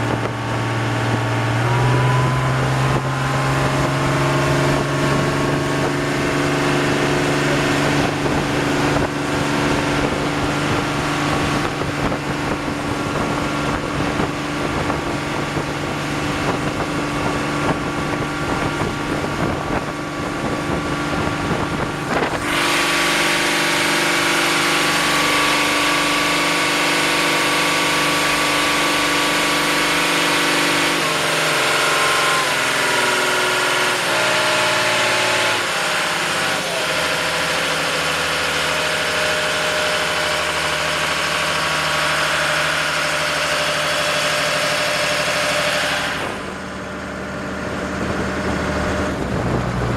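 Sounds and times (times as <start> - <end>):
rushing wind: 0.0 - 25.6, 45.4 - 49.9
boat engine running: 0.0 - 49.9
water noise: 0.0 - 49.9.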